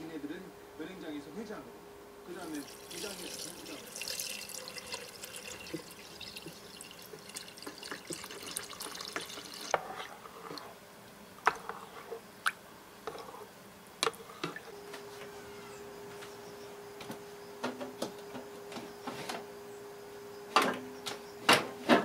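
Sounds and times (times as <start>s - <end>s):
water trickling and dripping: 2.4s - 9.8s.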